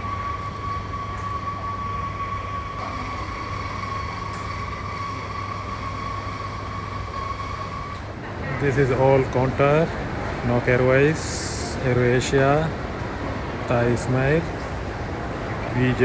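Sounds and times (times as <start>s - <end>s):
high-pitched whine: 0.0s - 12.8s
steady machine hum: 0.0s - 16.0s.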